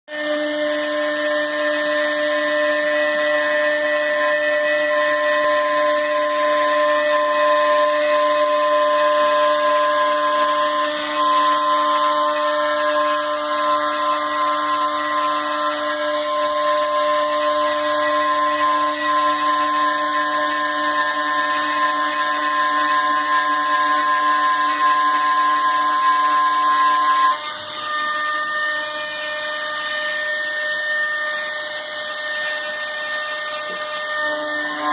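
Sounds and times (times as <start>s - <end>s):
machine motors whining: 0.2s - 34.9s.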